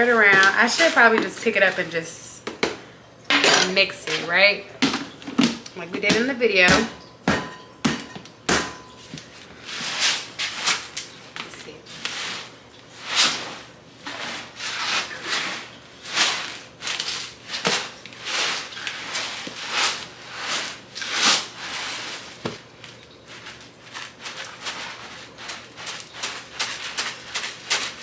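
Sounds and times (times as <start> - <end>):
container shaken with gritty swishing: 0.0 - 2.3, 9.3 - 28.0.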